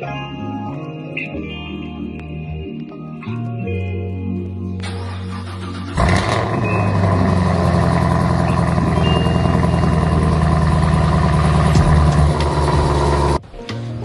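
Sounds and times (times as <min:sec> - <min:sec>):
car engine running loud: 0:05.8 - 0:13.4.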